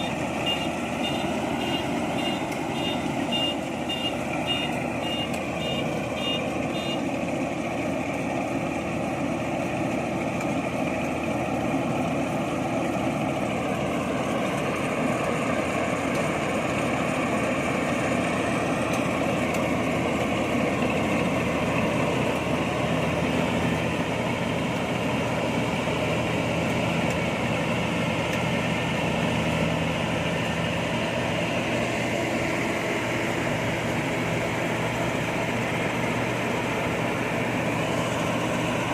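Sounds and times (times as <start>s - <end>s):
warning beeps: 0.0s - 7.0s
combine harvester running: 0.0s - 38.9s.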